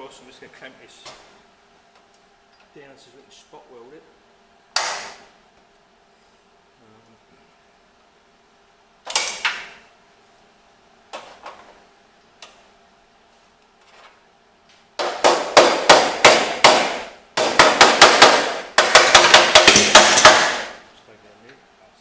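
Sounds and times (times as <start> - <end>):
hammer striking sheet steel: 15.0 - 20.8.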